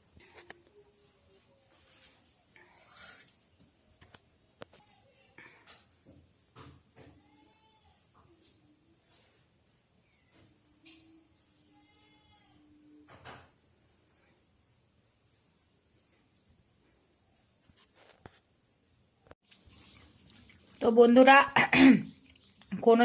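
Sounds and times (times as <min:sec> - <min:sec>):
cricket chirping: 0:00.0 - 0:20.3.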